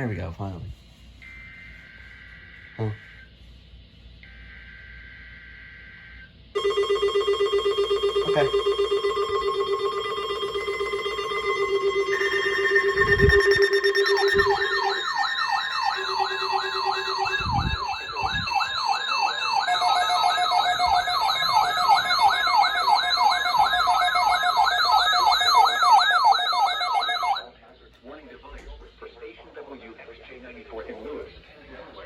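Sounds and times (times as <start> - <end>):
steady electronic alarm tones: 1.2 - 3.3, 4.2 - 27.5
fast yelping siren: 6.6 - 27.5.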